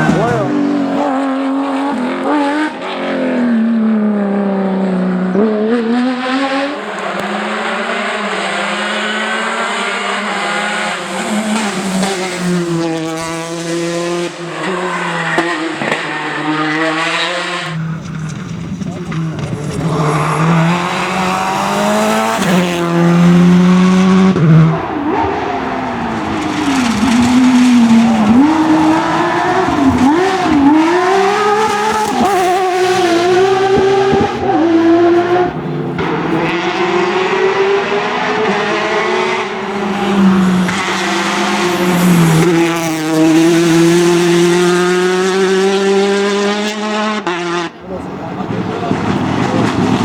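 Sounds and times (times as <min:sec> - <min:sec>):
rally car engines revving: 0:00.0 - 0:50.0
tyre squeal: 0:17.7 - 0:23.2.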